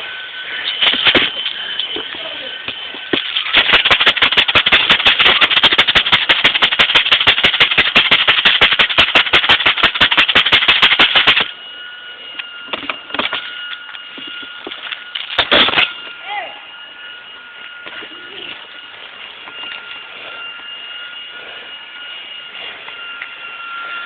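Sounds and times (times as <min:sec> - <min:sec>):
airsoft gun firing: 0:03.4 - 0:11.5.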